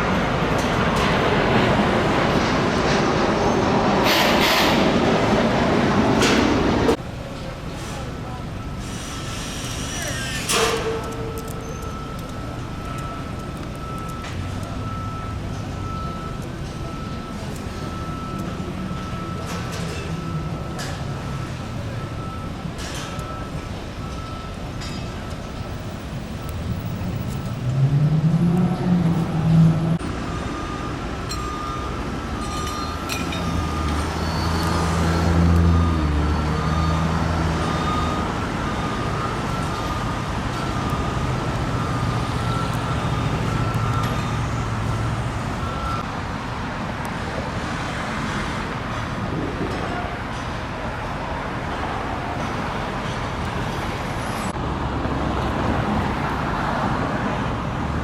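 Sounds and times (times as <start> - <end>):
road traffic rumbling: 0.0 - 58.0
heavy vehicle passing: 26.0 - 31.3.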